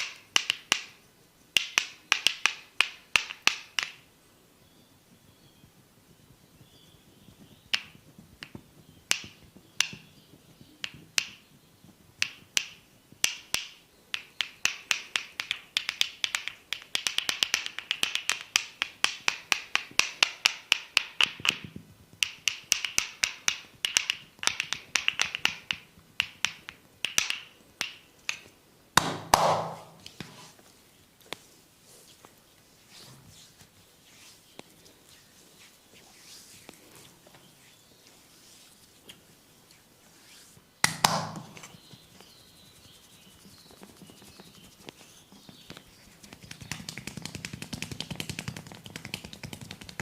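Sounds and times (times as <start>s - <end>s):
hands snapping clicks: 0.0s - 1.0s, 1.6s - 4.0s, 7.7s - 10.1s, 10.8s - 11.4s, 12.2s - 30.1s, 40.8s - 41.8s, 45.7s - 50.0s.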